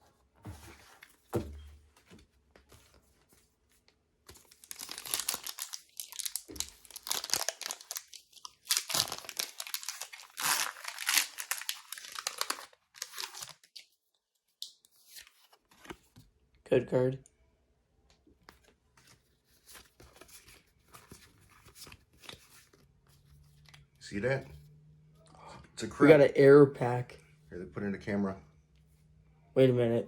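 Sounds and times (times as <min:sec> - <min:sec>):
soft thump: 0:01.3 - 0:01.8
foil wrapper tearing and crinkling: 0:04.5 - 0:13.8.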